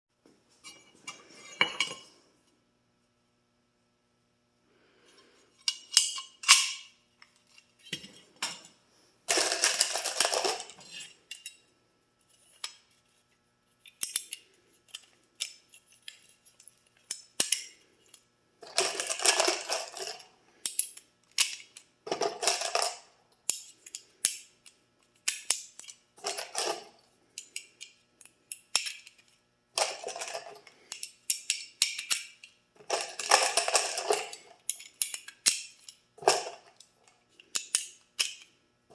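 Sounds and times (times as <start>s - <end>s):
metallic clicks and clinks: 25.2s - 38.5s.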